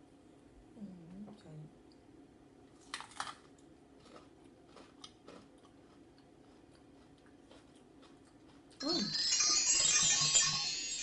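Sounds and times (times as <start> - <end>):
crunching and chewing: 2.7 - 8.9.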